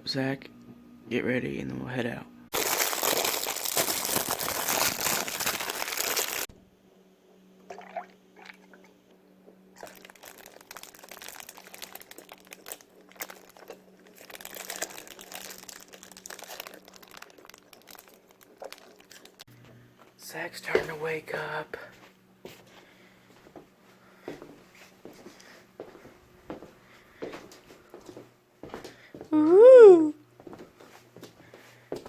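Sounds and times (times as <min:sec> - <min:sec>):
packaging crinkling: 0:02.5 - 0:06.5, 0:09.8 - 0:19.5.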